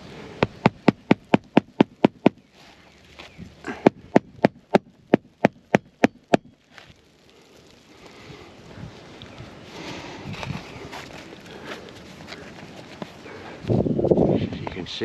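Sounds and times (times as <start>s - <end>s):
hammer striking roofing nails: 0.4s - 2.4s, 3.8s - 6.5s.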